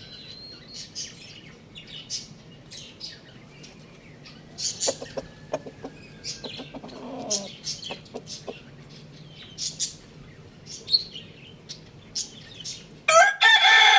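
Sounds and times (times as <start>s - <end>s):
birds chirping: 0.0s - 13.2s
chickens clucking: 4.3s - 9.1s.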